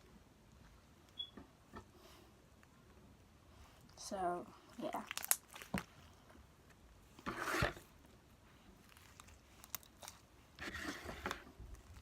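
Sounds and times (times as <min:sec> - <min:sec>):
slime squelching: 0:04.7 - 0:06.1, 0:08.6 - 0:10.8.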